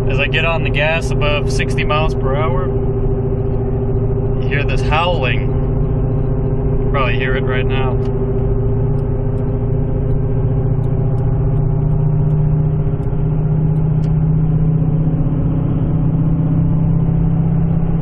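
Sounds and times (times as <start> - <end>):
road and tyre rumble: 0.0 - 18.0
wheel bearing droning howl: 0.0 - 18.0.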